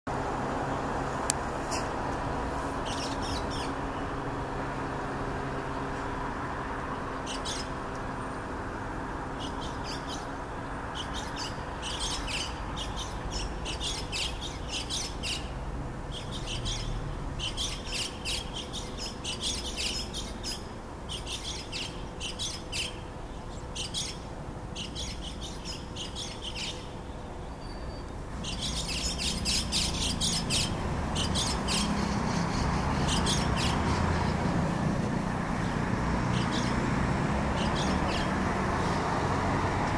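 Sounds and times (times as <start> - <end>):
starling chattering calls: 28.4 - 34.4.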